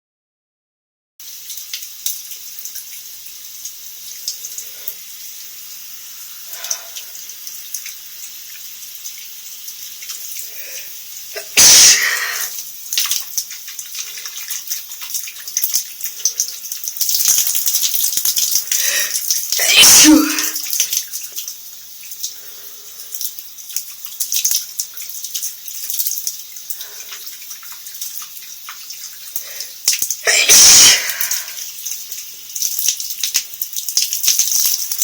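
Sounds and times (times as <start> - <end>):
shower water spraying: 1.2 - 35.0
person sneezing: 11.4 - 12.5, 18.7 - 20.7, 30.2 - 31.6.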